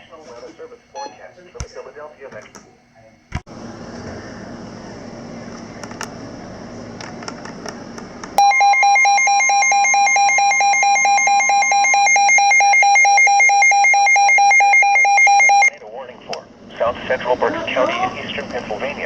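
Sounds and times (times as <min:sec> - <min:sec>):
radio hiss: 0:16.0 - 0:19.0.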